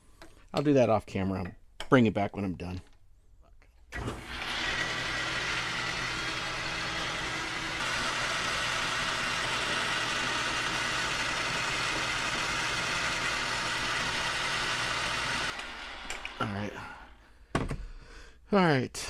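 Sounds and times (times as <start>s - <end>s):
metal lathe running: 4.0s - 16.7s.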